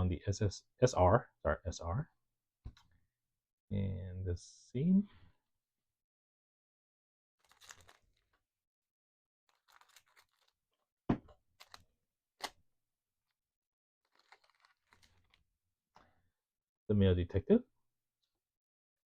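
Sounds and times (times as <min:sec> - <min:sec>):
cards rustling: 0:07.4 - 0:08.4, 0:09.5 - 0:10.6, 0:11.6 - 0:12.6, 0:14.0 - 0:15.4.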